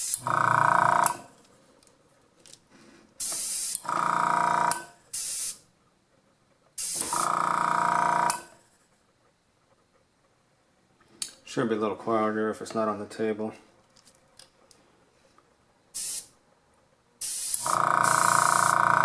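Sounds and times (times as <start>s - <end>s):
airbrush blowing air blasts: 0.0s - 0.4s, 3.2s - 3.9s, 5.2s - 5.6s, 6.8s - 7.4s, 16.0s - 16.3s, 17.2s - 19.0s
compressor motor hum: 0.0s - 1.2s, 3.4s - 4.8s, 6.8s - 8.5s, 17.4s - 19.0s.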